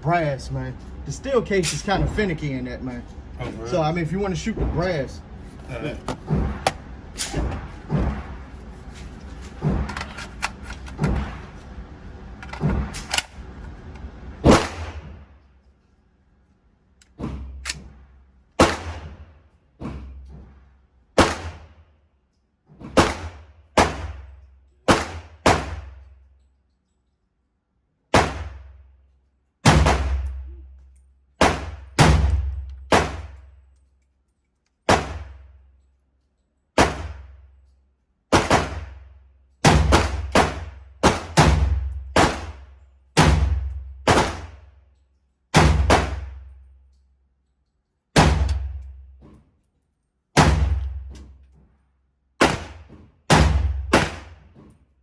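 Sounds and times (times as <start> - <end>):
pistol gunshots: 14.4 - 15.2, 18.6 - 19.2, 21.2 - 21.7, 23.0 - 24.3, 24.9 - 26.0, 28.1 - 28.7, 29.6 - 30.4, 31.4 - 33.4, 34.9 - 35.4, 36.8 - 37.2, 38.3 - 39.0, 39.6 - 42.6, 43.2 - 44.6, 45.6 - 46.4, 48.2 - 48.7, 50.4 - 51.0, 52.4 - 54.5.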